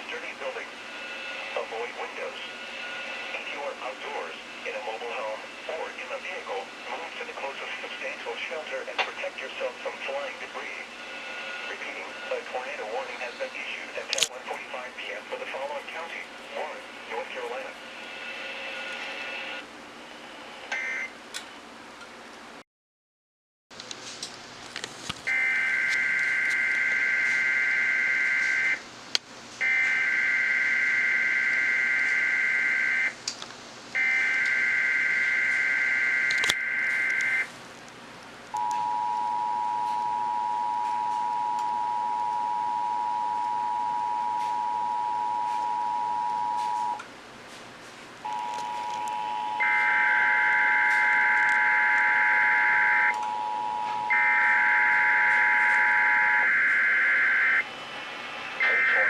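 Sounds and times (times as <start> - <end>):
two-tone attention signal: 38.6 - 47.0.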